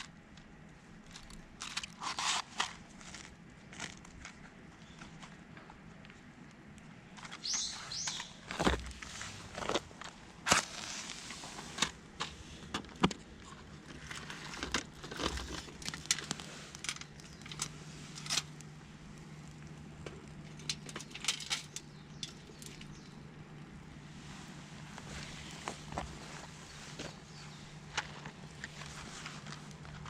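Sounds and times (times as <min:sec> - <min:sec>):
campfire crackling and popping: 0:12.9 - 0:26.2.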